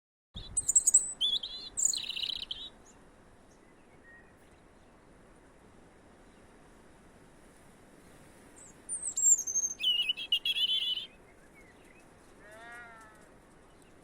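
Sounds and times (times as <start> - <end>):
bird chirping and warbling: 0.4 - 2.8, 8.6 - 11.2
faint background hiss: 0.4 - 14.0.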